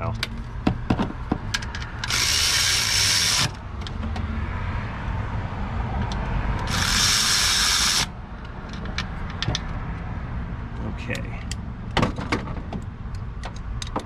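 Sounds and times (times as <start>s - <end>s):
cordless power tool running: 2.1s - 3.6s, 6.6s - 8.1s.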